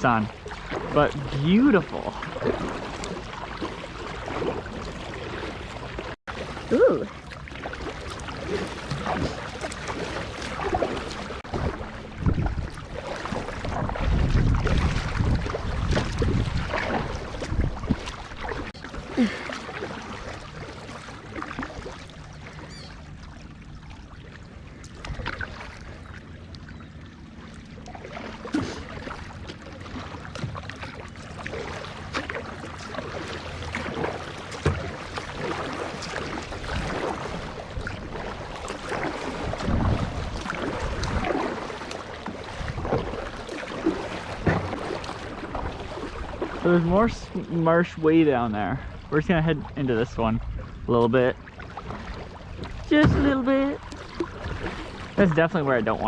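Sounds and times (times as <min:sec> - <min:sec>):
kayak paddle splashing in water: 0:00.0 - 0:56.0
wind rumbling on microphone: 0:10.6 - 0:18.7, 0:36.4 - 0:41.8.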